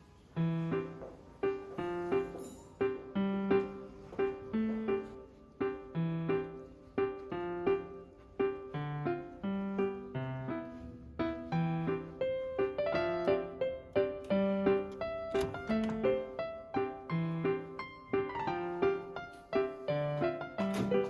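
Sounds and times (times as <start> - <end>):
piano music: 0.0 - 21.0.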